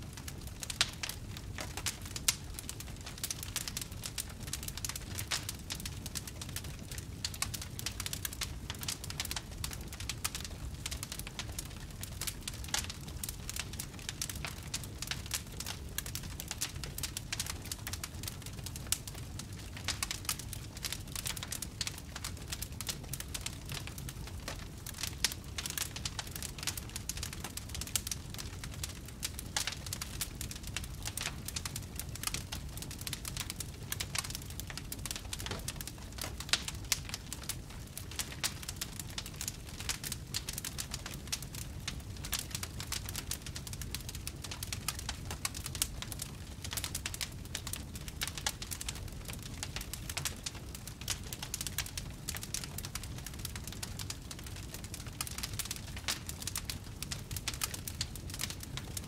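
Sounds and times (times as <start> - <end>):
wood fire crackling and popping: 0.0 - 59.0.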